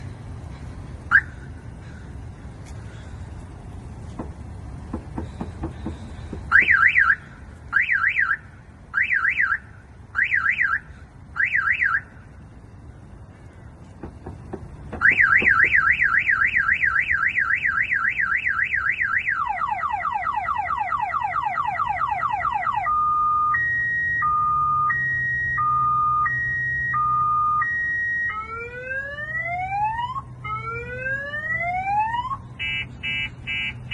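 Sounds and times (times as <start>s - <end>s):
car alarm siren: 1.1s - 1.3s, 6.5s - 9.6s, 10.2s - 12.1s, 14.9s - 33.9s.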